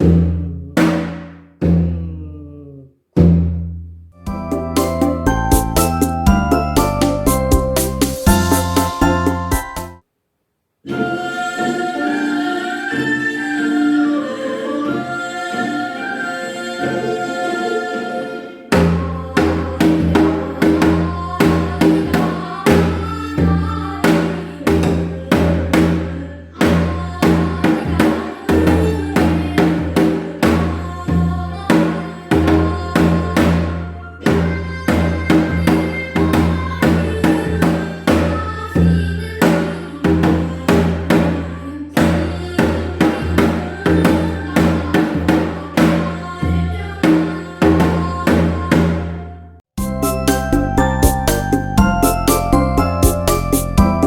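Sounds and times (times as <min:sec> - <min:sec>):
sustained instrumental accompaniment: 0:04.2 - 0:10.0, 0:49.8 - 0:54.0
hourglass drum strokes: 0:04.3 - 0:10.0, 0:49.8 - 0:54.0.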